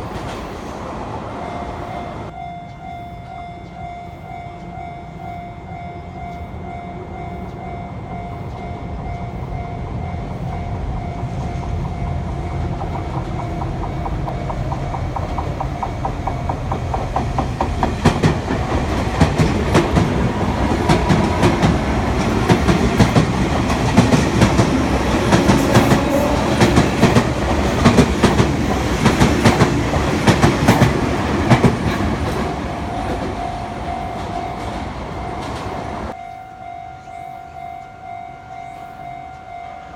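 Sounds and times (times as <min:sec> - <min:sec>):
train rumble: 0:00.0 - 0:39.9
crossing warning bell ringing: 0:01.4 - 0:39.9
wheels clacking over rail joints: 0:11.3 - 0:36.2.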